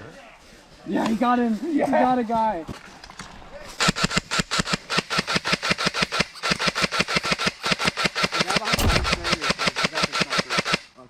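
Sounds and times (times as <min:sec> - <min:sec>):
airsoft gun rapid fire: 0:03.8 - 0:10.9
low thump: 0:08.8 - 0:09.5.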